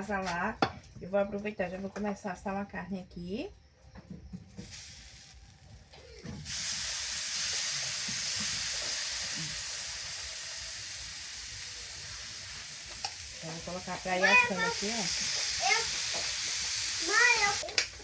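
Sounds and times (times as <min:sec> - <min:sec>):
meat sizzling: 0:04.6 - 0:18.0.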